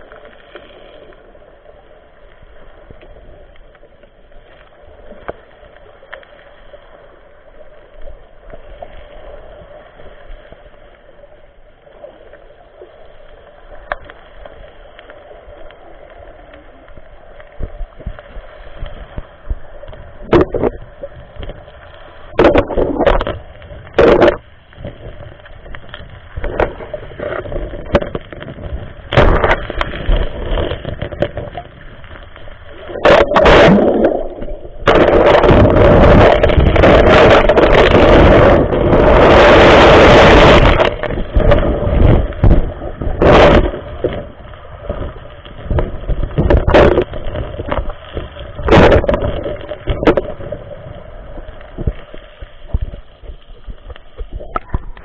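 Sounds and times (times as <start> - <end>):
muffled underwater knocks and swishes: 17.4 - 39.4, 40.1 - 55.0.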